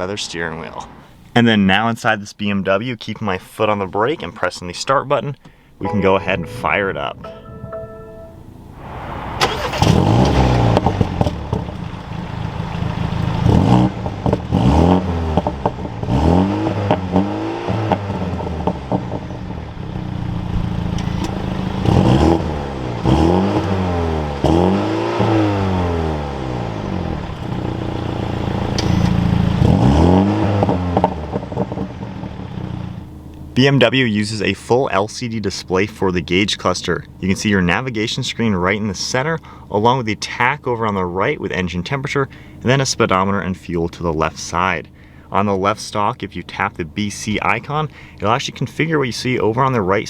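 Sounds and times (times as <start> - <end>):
car engine starting and revving: 8.9 - 33.2.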